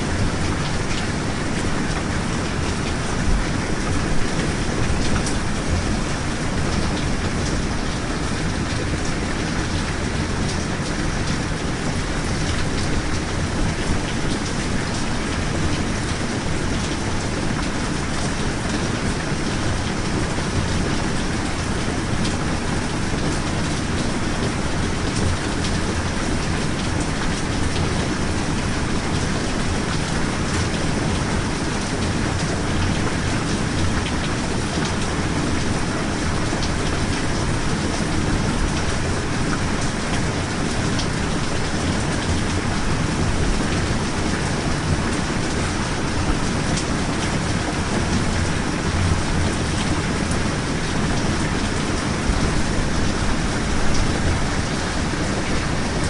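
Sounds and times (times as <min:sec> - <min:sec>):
rain hissing: 0:32.0 - 0:56.0.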